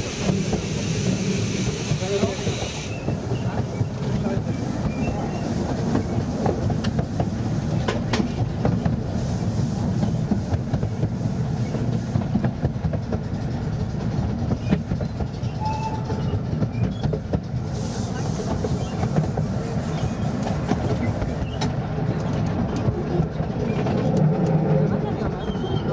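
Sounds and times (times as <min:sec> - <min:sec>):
railway carriage rumbling: 0:00.0 - 0:25.9.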